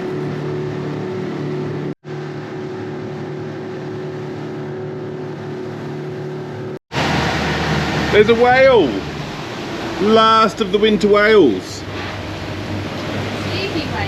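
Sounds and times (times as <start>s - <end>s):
boat engine humming: 0.0s - 14.0s
water wash: 6.9s - 14.0s.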